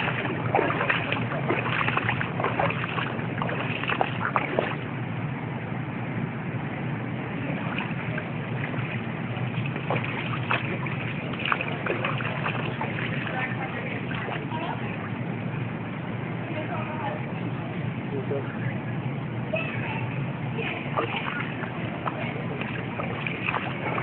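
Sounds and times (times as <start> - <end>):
moving floodwater: 0.0 - 5.0, 7.2 - 17.6, 19.5 - 24.0
water splashes and sloshes: 0.0 - 5.2, 6.7 - 15.9, 19.5 - 24.0.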